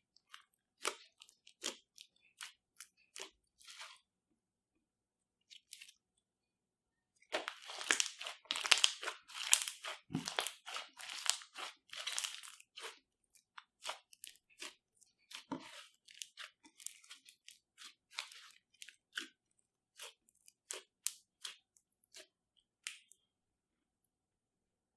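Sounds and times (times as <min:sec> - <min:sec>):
slime crackling and popping: 0:07.3 - 0:12.9.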